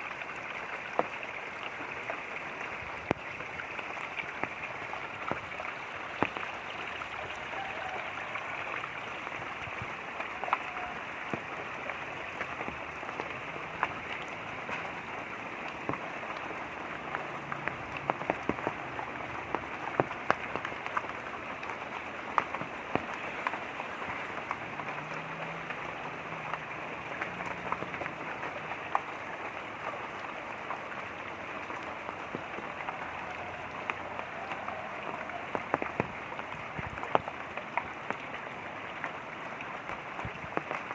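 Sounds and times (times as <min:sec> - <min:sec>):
light rain pattering: 0:00.0 - 0:40.9
running water rushing: 0:00.0 - 0:40.9.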